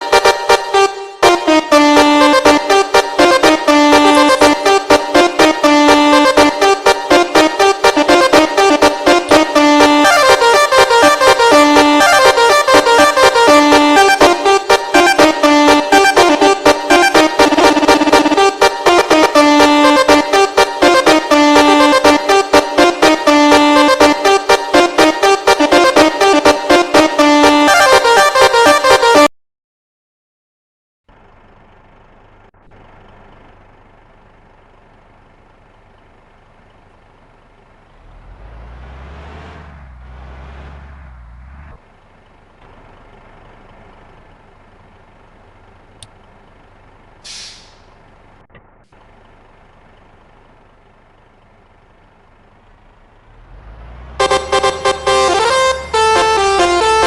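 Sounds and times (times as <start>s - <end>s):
bus musical horn: 0.0s - 29.3s, 38.0s - 41.8s, 47.2s - 48.5s, 52.7s - 57.0s
heavy vehicle passing: 37.9s - 44.0s, 52.6s - 57.0s
short hiss: 47.2s - 48.0s.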